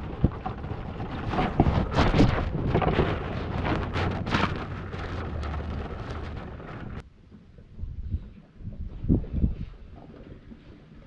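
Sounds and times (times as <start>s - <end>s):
rattling knocks and crackles: 0.0s - 7.0s
wind buffeting microphone: 0.0s - 7.0s, 7.6s - 10.9s
low steady rumble: 0.0s - 10.5s.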